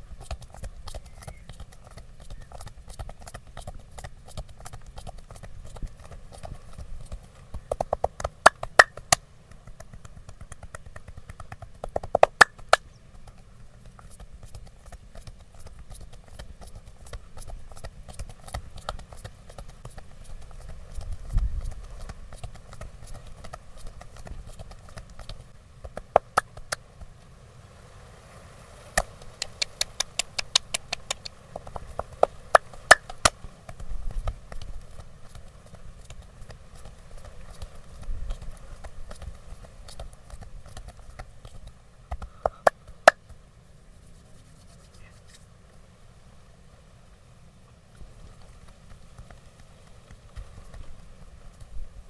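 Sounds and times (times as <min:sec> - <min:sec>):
rapid massage taps: 0:00.0 - 0:27.2, 0:29.0 - 0:45.8, 0:47.9 - 0:52.0
massage knocks on body: 0:02.6 - 0:12.8.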